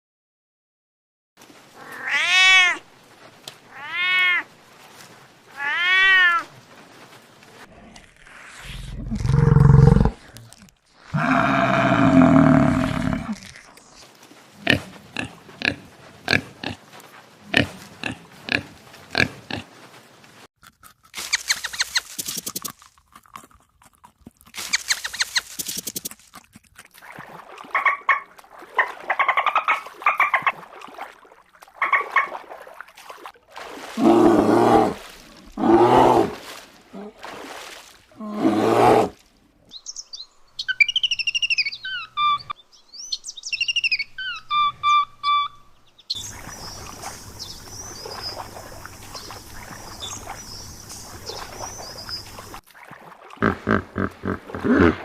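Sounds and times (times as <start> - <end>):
animal grunts: 8.9 - 10.5, 11.1 - 13.4, 53.4 - 55.0.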